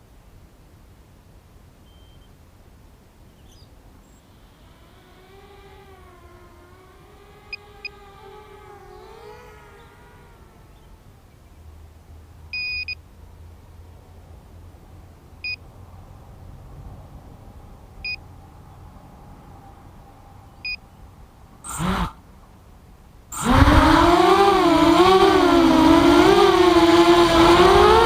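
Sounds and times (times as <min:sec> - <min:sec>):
quadcopter motors whining: 0:03.4 - 0:11.6, 0:21.6 - 0:22.4, 0:23.3 - 0:28.0.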